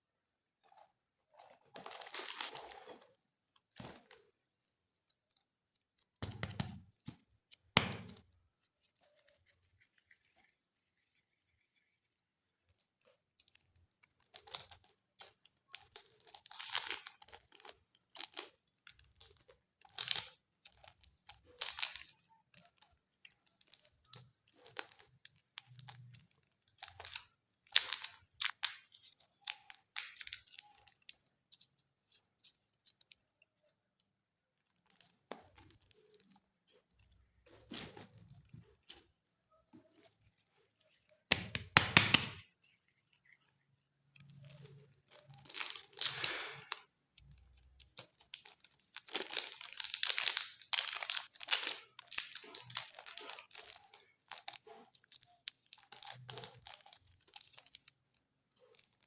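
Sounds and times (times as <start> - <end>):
packaging tearing and crinkling: 1.7 - 3.0, 44.3 - 57.9.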